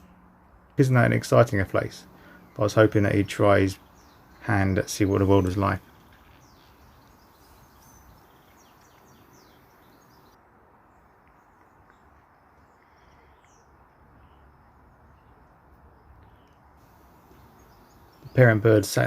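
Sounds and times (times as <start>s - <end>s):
songbirds chirping: 0.0s - 19.0s
low background hiss: 16.3s - 19.0s.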